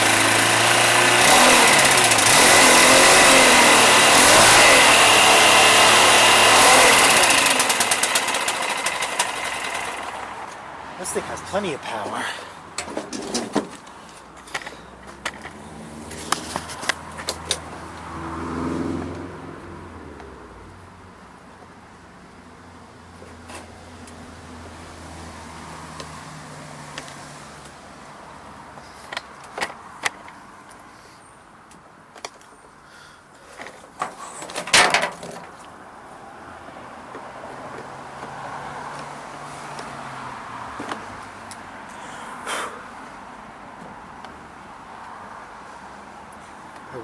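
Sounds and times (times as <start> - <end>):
leaf blower engine running: 0.0 - 11.4
handling clicks and knocks: 12.7 - 17.7, 29.0 - 30.4, 33.5 - 35.8.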